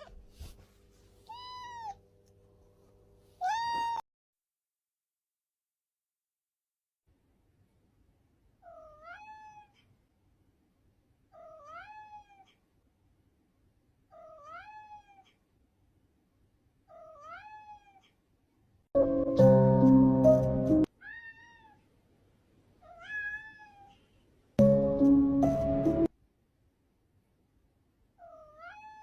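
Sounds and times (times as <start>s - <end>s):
cat meowing: 1.3s - 2.0s, 3.4s - 4.0s, 8.6s - 9.9s, 11.3s - 12.6s, 14.1s - 15.4s, 16.9s - 18.1s, 21.0s - 21.8s, 22.8s - 24.0s, 28.2s - 29.0s.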